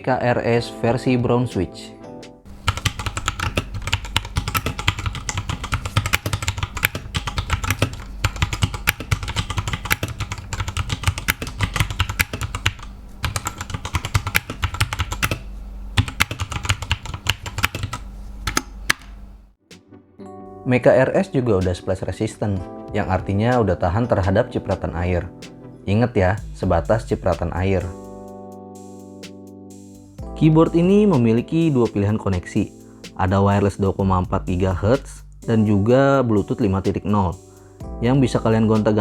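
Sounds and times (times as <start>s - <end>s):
mechanical keyboard typing: 2.5s - 19.2s.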